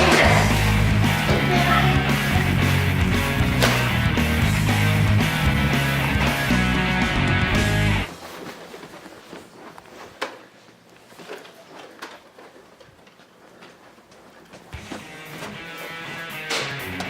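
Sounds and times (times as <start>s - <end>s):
background music: 0.0s - 8.1s, 14.8s - 17.0s.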